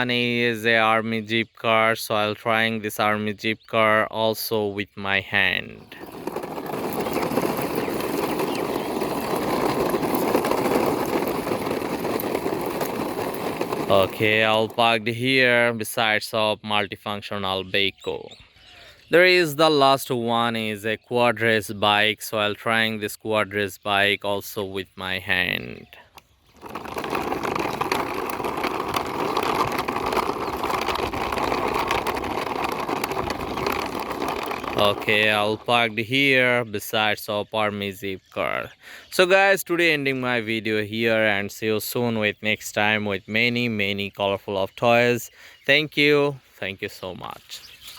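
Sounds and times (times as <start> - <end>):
toy wheels rolling and rattling: 5.4 - 15.0, 24.4 - 36.5.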